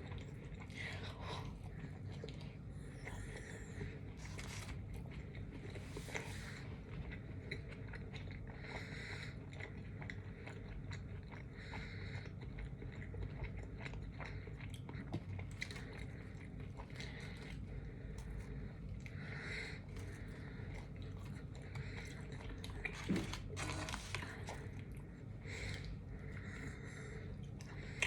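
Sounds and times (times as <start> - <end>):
chewing and biting sandwich: 0.0 - 28.0.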